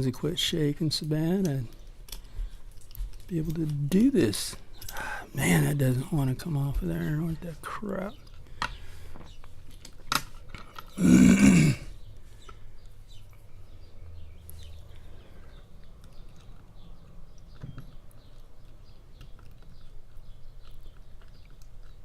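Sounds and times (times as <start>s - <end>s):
throaty vocal burst: 11.0s - 12.0s.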